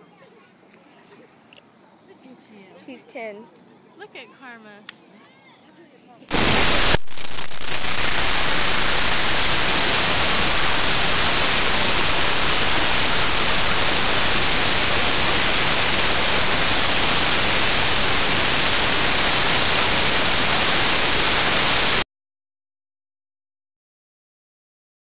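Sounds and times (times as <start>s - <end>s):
steady static hiss: 6.3s - 22.0s.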